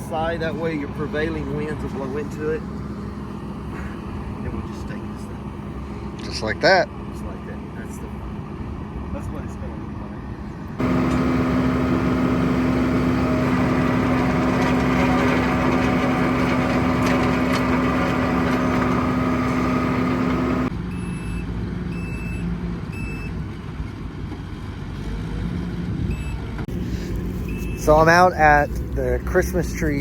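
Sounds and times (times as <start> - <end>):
heavy machine engine humming: 0.0 - 30.0
reversing alarm beeps: 20.9 - 23.4, 26.1 - 26.4, 27.4 - 28.0.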